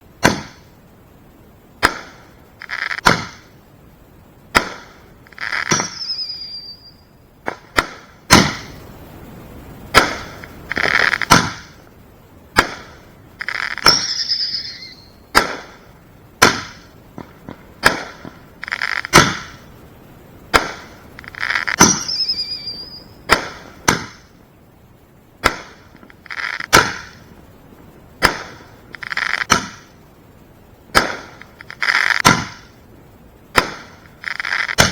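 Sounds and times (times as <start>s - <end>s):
firework crackling hiss: 0.0s - 24.5s, 25.3s - 34.9s
firework bangs: 0.1s - 0.8s, 1.5s - 3.6s, 4.4s - 24.4s, 25.4s - 30.0s, 30.8s - 34.9s
firework falling whistle: 5.3s - 7.2s, 13.5s - 15.2s, 21.2s - 23.2s.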